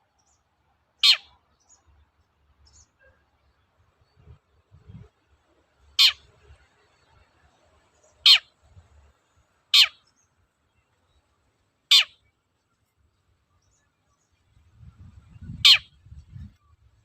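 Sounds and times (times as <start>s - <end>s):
bird sharp downward calls: 1.0s - 1.4s, 6.0s - 6.3s, 8.2s - 8.5s, 9.7s - 10.2s, 11.9s - 12.3s, 15.4s - 16.0s.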